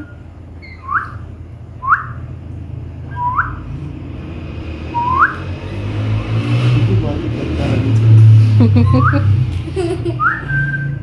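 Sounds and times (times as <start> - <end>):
parrot chick chirping: 0.0 - 2.3.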